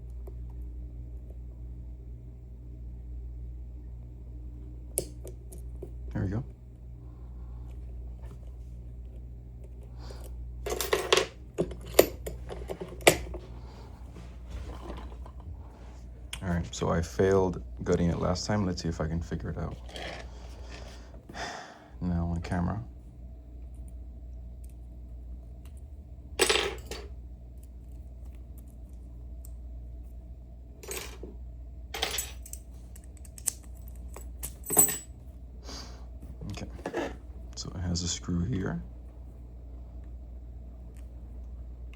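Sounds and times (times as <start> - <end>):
steady low hum: 0.0 - 41.9
small metal parts clinking: 10.2 - 13.4, 32.0 - 35.1
metal lock clinking and rattling: 10.7 - 13.4.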